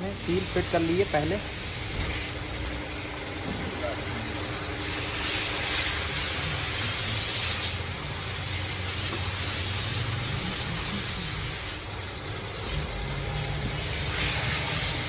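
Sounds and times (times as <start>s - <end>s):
steady pressurised hiss: 0.0s - 2.3s, 4.8s - 11.8s.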